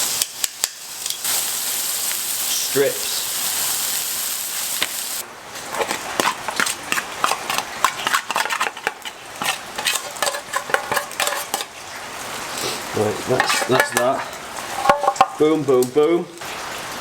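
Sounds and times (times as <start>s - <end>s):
steady hiss: 0.0s - 5.2s.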